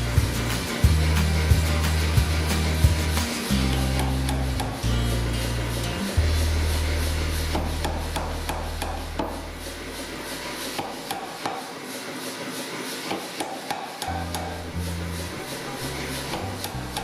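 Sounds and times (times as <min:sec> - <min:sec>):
low hum: 0:00.0 - 0:10.8
hammer striking steel: 0:03.2 - 0:04.8, 0:07.4 - 0:11.8, 0:13.0 - 0:14.8.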